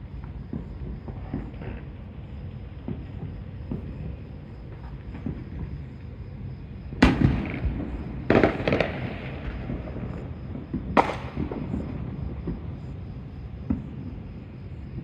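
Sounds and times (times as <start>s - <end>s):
firework bangs: 0.0s - 15.0s
firework pops: 0.2s - 2.0s, 2.8s - 5.8s, 7.0s - 12.9s, 13.6s - 14.1s.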